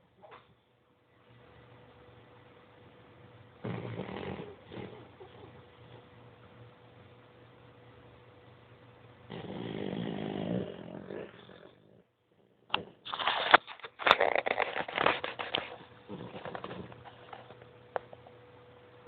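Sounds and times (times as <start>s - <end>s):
pet snoring: 3.6s - 6.1s, 9.3s - 12.1s, 15.8s - 17.2s.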